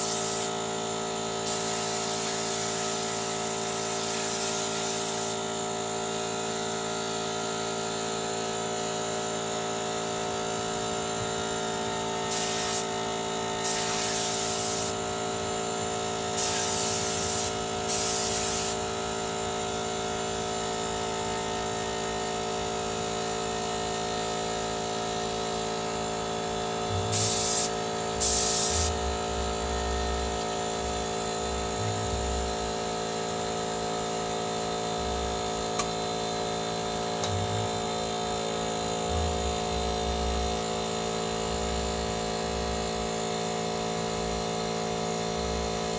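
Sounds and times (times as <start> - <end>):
compressed air hissing blasts: 0.0 - 0.6, 1.4 - 5.4, 12.3 - 13.0, 13.6 - 15.2, 16.3 - 18.9, 27.0 - 29.2
air compressor humming: 0.0 - 45.9.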